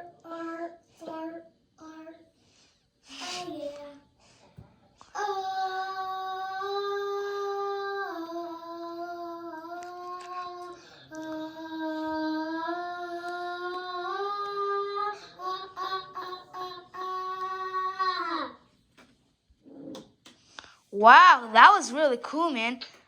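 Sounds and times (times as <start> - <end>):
child singing held notes: 0.0 - 2.3, 3.1 - 18.7.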